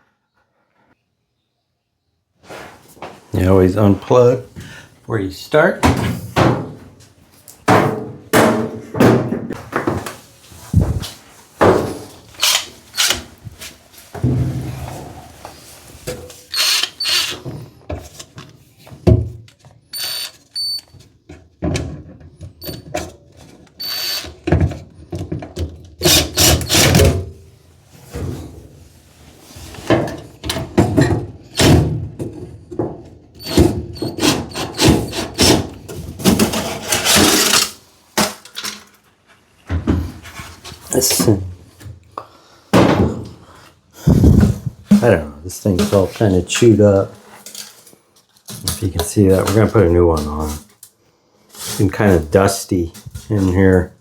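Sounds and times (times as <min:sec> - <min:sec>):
knocks and clatter on dryer duct: 0:05.8 - 0:06.9, 0:07.6 - 0:10.2, 0:42.7 - 0:43.4.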